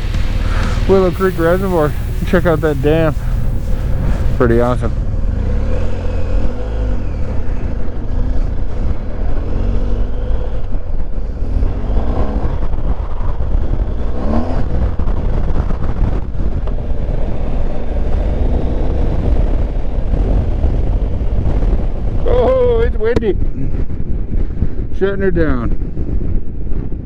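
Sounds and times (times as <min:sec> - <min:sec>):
drone propellers whining: 0:00.0 - 0:07.6
wind buffeting microphone: 0:00.0 - 0:27.0.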